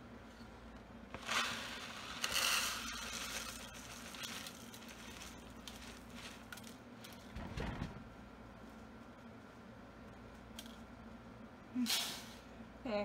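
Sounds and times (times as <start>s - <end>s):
dry rice pouring and rattling: 1.2s - 7.3s.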